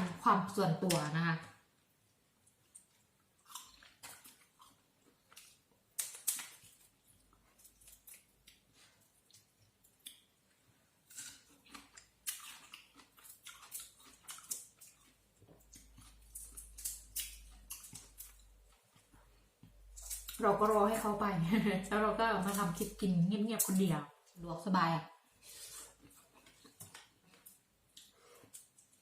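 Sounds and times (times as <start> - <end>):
chewing: 2.4 - 20.4, 25.6 - 29.0.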